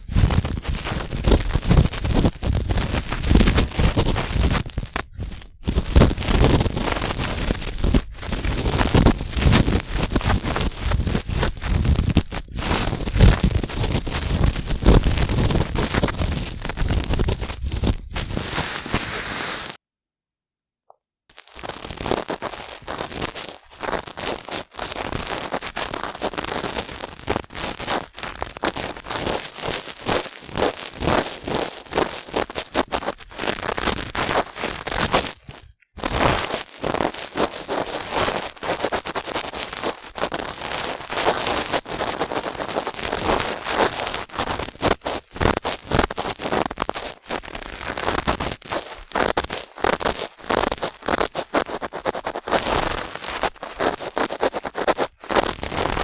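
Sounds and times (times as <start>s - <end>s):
cotton swabs scraping microphone: 11.2s - 19.8s.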